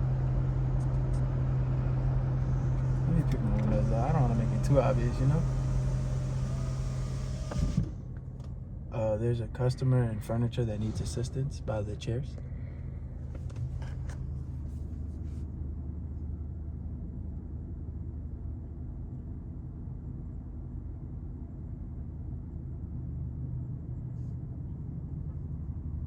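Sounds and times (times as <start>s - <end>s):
car engine idling: 0.0s - 17.2s.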